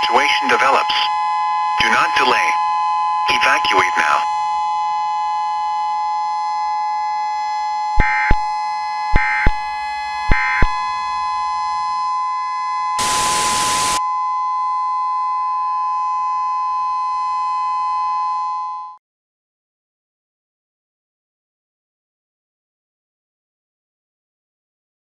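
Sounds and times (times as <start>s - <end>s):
burst of static: 13.0s - 14.0s
digital data bursts: 13.0s - 14.0s.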